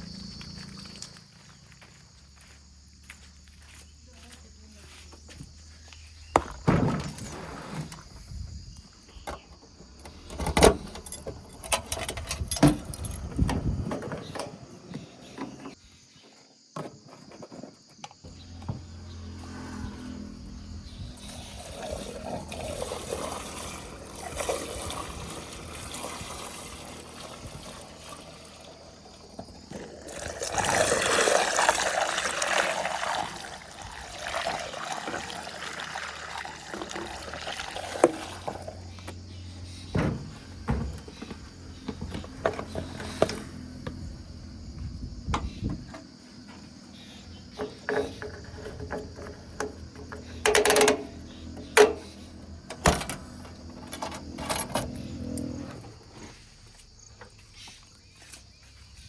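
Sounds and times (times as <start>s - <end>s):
metal clanks and knocks: 39.9s - 43.4s, 47.5s - 52.1s.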